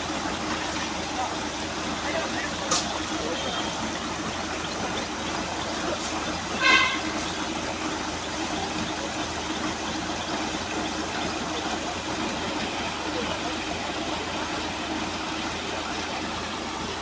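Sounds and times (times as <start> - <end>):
vehicle horn toot: 3.2 - 3.9, 6.5 - 7.5.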